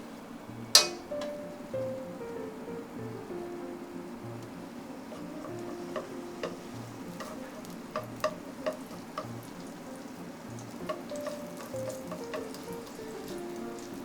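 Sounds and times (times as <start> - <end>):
food sizzling in frying pan: 0.0 - 14.0
utensil tapping against pan: 0.7 - 1.5, 4.4 - 14.0.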